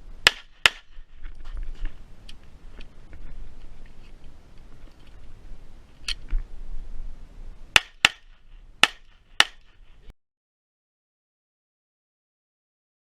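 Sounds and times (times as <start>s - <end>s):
pistol shots: 0.3s - 0.9s.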